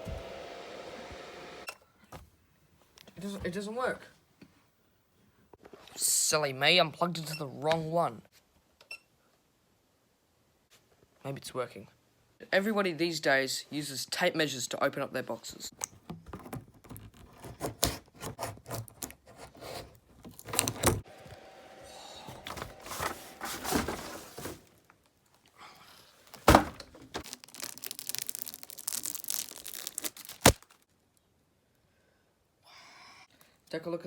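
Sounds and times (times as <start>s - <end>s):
cardboard rustling and scraping: 16.2s - 21.4s, 22.2s - 24.8s
packing tape tearing: 26.2s - 30.8s.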